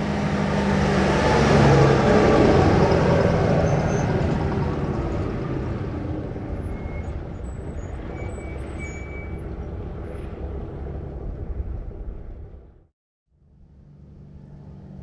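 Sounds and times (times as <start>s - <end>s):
truck braking: 0.0s - 11.0s
truck engine rumbling: 0.0s - 12.8s.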